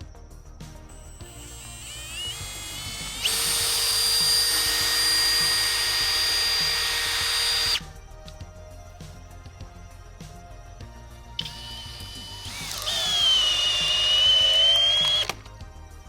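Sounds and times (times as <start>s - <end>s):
hammer drill motor whining: 0.9s - 7.9s, 11.4s - 15.5s.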